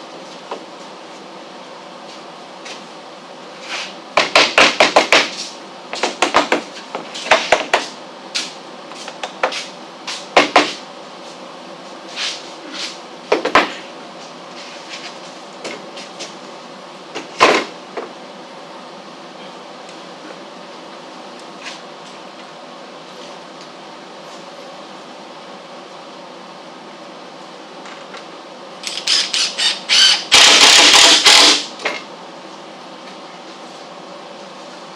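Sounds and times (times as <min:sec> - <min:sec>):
hammer knocking on wood: 0:04.2 - 0:05.3, 0:06.0 - 0:06.7, 0:10.4 - 0:10.8.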